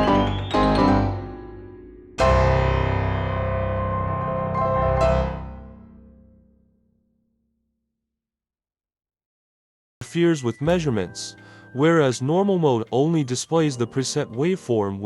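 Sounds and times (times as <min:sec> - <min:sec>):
piano music: 0:00.0 - 0:06.5, 0:10.0 - 0:15.0.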